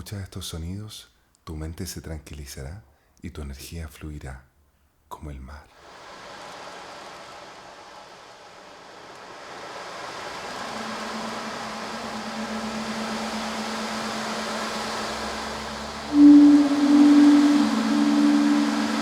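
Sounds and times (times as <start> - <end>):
sea surf: 9.2 - 19.0
steady low tone: 10.5 - 19.0
higher tone: 10.7 - 19.0.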